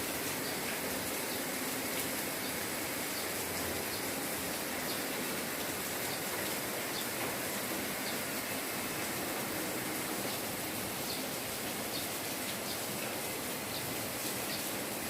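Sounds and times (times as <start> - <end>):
light rain hiss: 0.0 - 15.0.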